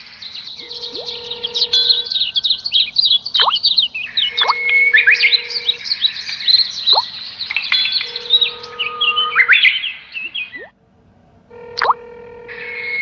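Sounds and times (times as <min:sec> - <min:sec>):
small birds chirping: 0:00.0 - 0:10.8
held plain tones: 0:08.0 - 0:09.5.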